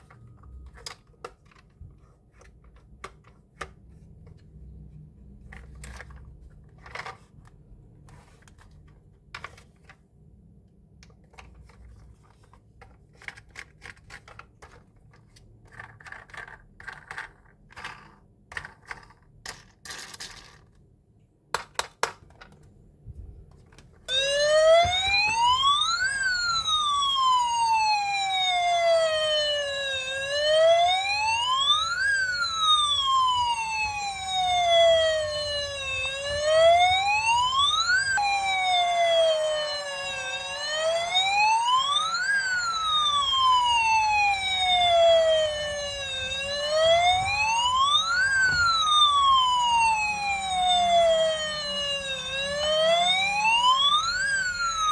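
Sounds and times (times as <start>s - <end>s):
toy electronic siren wailing: 24.1s - 54.9s.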